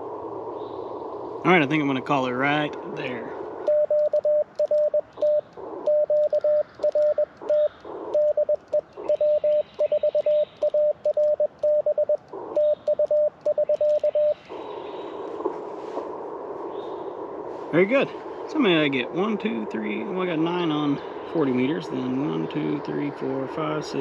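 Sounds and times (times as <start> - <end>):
receiver hiss: 0.0 - 24.0
morse code tone: 3.6 - 14.5.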